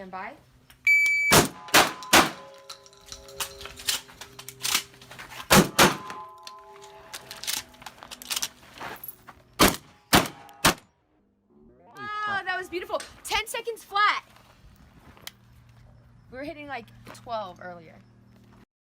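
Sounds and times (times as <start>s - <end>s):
steel targets ringing: 1.2s - 8.1s
gunshots: 1.3s - 2.6s, 5.5s - 6.2s, 9.6s - 10.9s.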